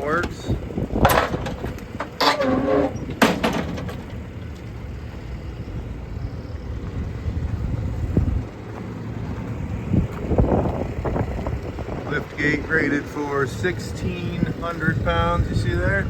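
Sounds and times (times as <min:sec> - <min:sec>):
power unit humming: 0:00.0 - 0:16.0
lift gate clunk: 0:01.0 - 0:04.6.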